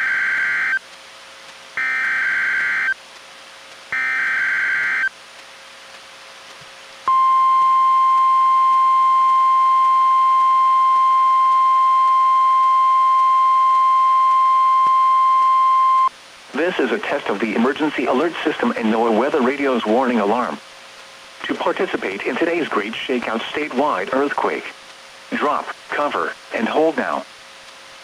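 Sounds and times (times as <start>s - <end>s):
steady warning alarm tone: 0.0s - 0.8s, 1.8s - 3.0s, 3.9s - 5.1s, 7.1s - 16.1s.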